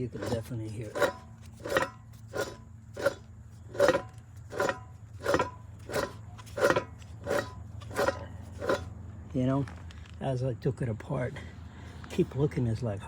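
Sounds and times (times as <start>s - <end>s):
wheel bearing grating: 0.0s - 9.5s.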